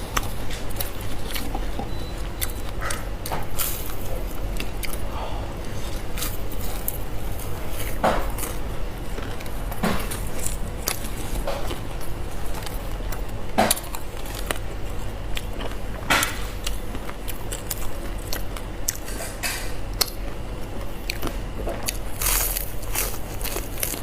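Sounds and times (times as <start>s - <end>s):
close-miked crunchy chewing: 0.0s - 24.0s.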